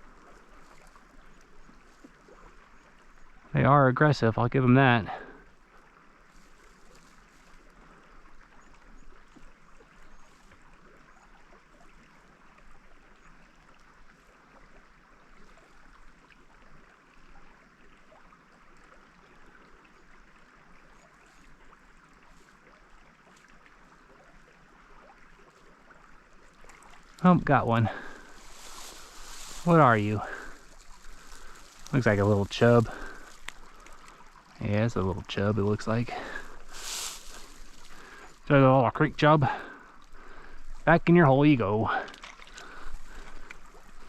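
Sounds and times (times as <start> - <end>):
creek trickling and gurgling: 0.0 - 44.0
light clicks and rustles: 30.4 - 34.5.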